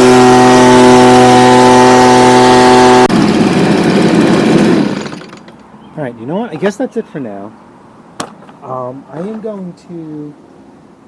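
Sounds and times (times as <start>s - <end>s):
leaf blower engine running: 0.0s - 5.5s.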